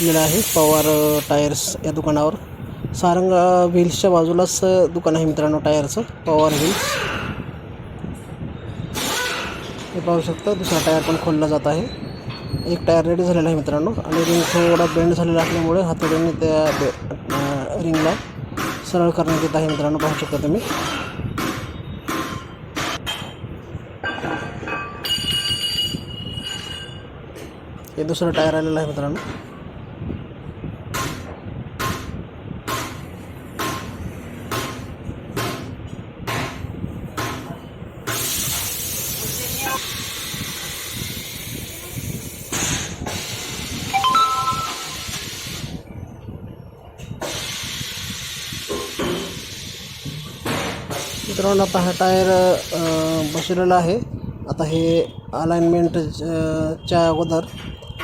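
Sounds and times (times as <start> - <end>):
compressed air hissing: 0.0 - 1.7, 38.1 - 43.9, 47.2 - 50.2, 50.9 - 53.6
high metallic squeal: 10.4 - 13.0.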